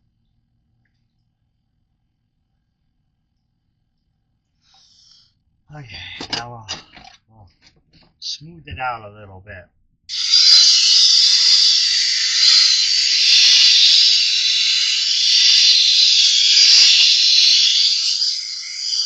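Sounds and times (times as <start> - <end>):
knife grinding on sharpening wheel: 10.1 - 19.0.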